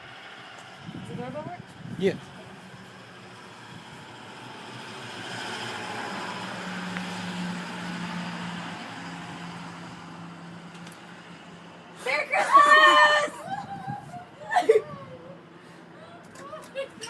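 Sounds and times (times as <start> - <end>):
vehicle passing: 0.0 - 13.3.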